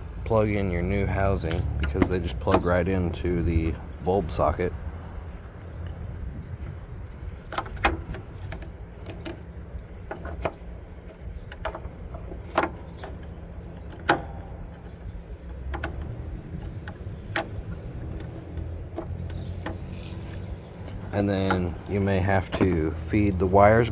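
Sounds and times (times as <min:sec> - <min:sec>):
low background rumble: 0:00.0 - 0:23.9
plastic clicks and knocks: 0:01.4 - 0:02.8, 0:06.6 - 0:23.4.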